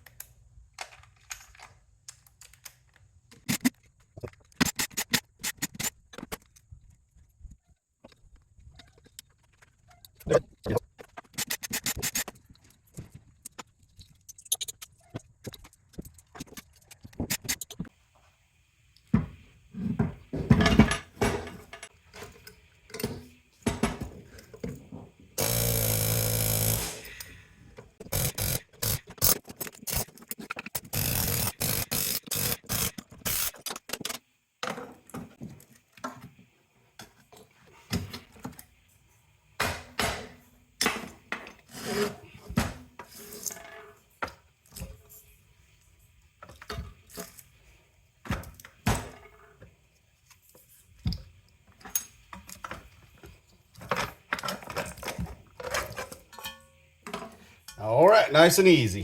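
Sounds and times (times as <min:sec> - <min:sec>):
mechanical buzz: 0:25.4 - 0:27.1.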